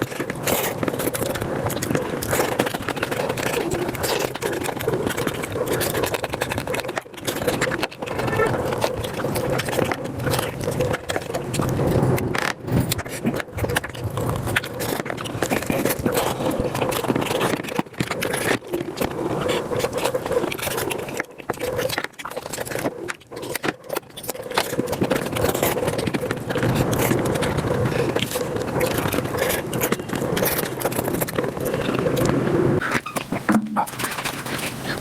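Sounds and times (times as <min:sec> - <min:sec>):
chewing and slurping: 0:27.0 - 0:35.0.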